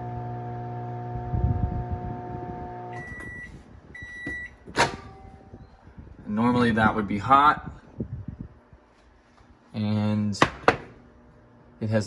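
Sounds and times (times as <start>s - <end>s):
microwave oven humming: 0.0s - 8.6s
microwave beeps: 2.9s - 5.8s.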